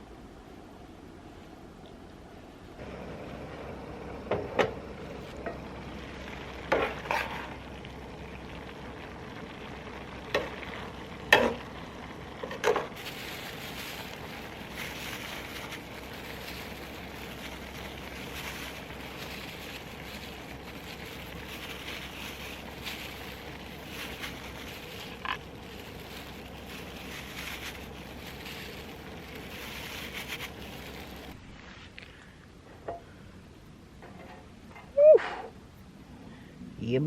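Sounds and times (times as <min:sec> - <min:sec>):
seafood sizzling in pan: 0:05.3 - 0:31.4.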